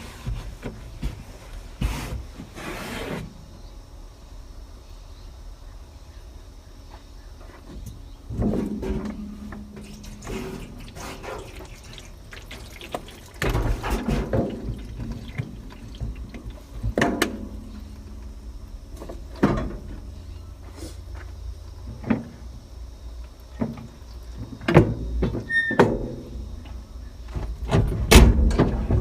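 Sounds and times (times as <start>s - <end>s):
water splashing on glass: 9.8s - 16.7s.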